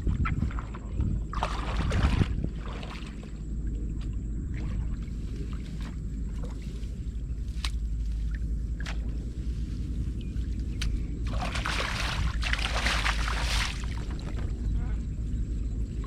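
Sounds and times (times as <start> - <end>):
steady low rumble: 0.0 - 16.0
water splashing and sloshing: 0.0 - 16.0.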